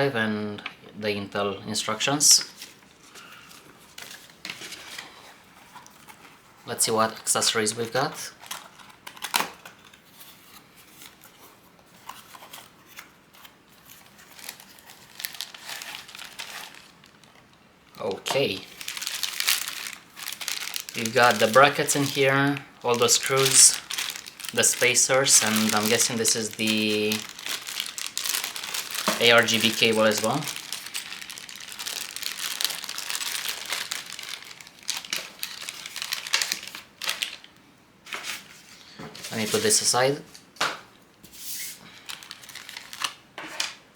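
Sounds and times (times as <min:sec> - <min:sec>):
packaging crinkling and rustling: 0:02.4 - 0:06.7, 0:07.4 - 0:40.5, 0:41.8 - 0:43.8.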